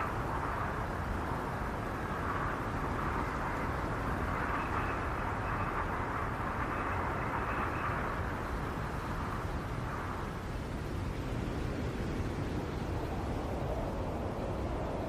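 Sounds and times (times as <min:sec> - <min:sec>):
wind howling: 0:00.0 - 0:15.0.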